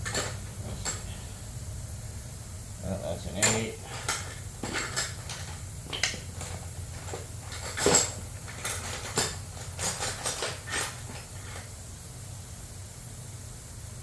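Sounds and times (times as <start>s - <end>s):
metal tools clinking: 0.0s - 1.2s, 3.3s - 11.7s
low steady hum: 0.0s - 14.0s.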